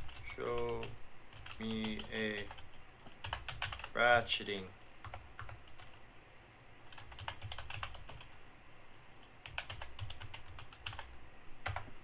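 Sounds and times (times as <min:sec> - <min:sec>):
typing on computer keyboard: 0:00.0 - 0:04.0, 0:05.0 - 0:06.0, 0:06.9 - 0:08.3, 0:09.4 - 0:11.9.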